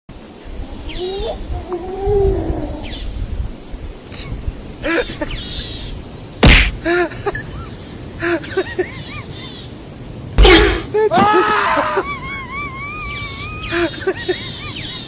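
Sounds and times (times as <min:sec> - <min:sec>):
birds chirping: 0:00.1 - 0:15.0
sharp knock: 0:06.4 - 0:06.8.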